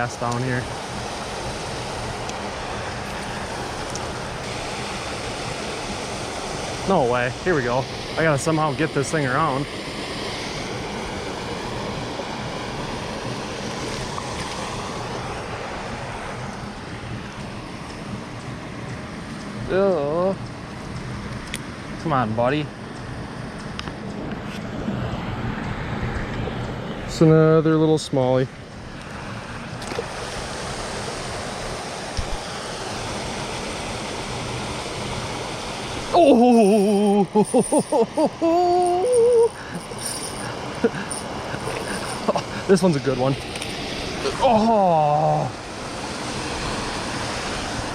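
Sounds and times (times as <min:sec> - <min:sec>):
creek water rushing over rocks: 0:28.8 - 0:47.9.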